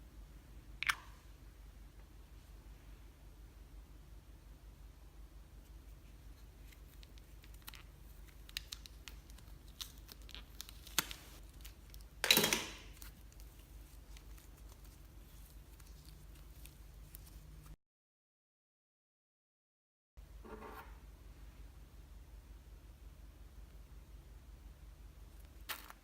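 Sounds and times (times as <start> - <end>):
slime worked by hand: 5.6 - 17.8, 25.4 - 26.0
small clicks and pops: 6.7 - 12.4.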